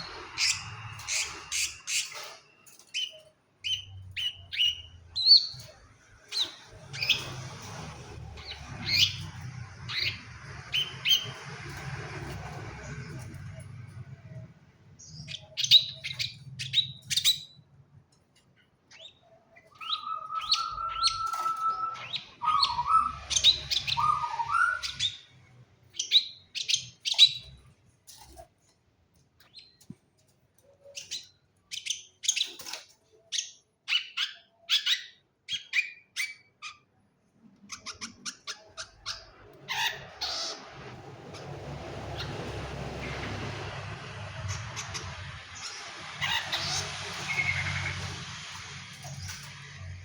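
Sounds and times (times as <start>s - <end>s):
bird sharp high chirps: 18.9s - 25.3s.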